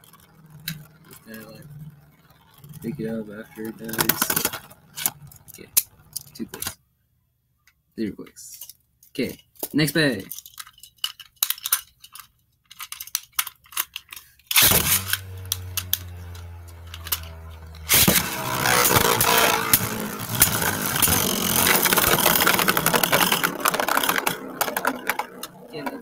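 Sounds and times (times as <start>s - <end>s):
spinning top humming: 0.0s - 6.4s, 14.6s - 26.0s
spinning tops clashing and rattling: 0.0s - 6.4s, 14.6s - 26.0s.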